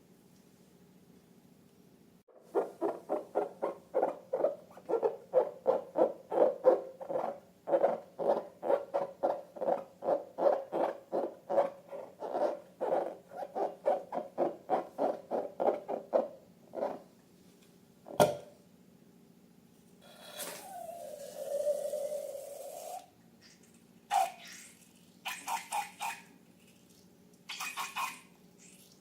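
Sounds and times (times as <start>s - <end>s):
squishy squeaks of squeezed slime balloon: 20.2s - 22.2s, 22.9s - 29.0s.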